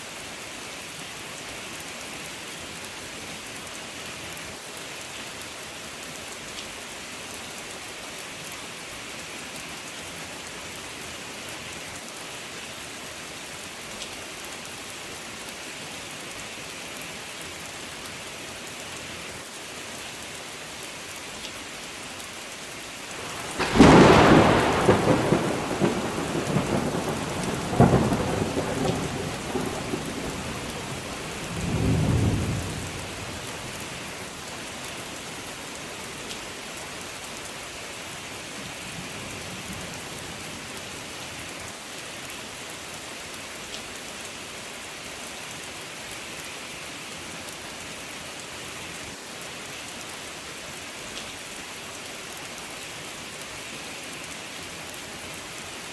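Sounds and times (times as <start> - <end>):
steady rain: 0.0 - 55.9
thunderclap rumbling: 23.2 - 33.4.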